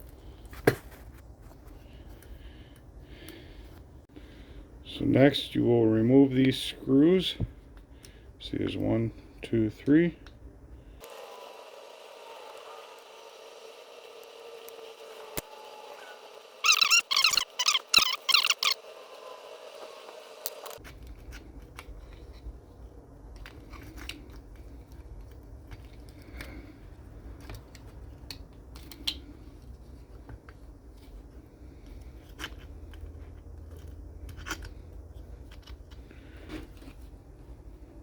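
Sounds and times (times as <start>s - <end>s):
small parts being handled: 16.6s - 18.8s, 20.4s - 37.8s.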